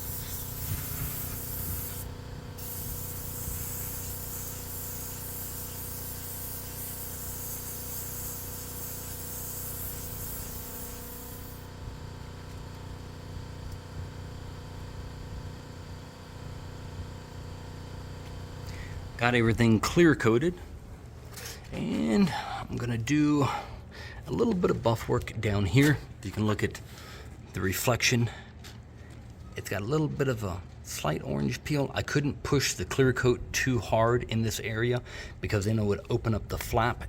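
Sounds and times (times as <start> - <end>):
spray gun hissing: 0.0 - 11.7
steady low hum: 0.0 - 37.0.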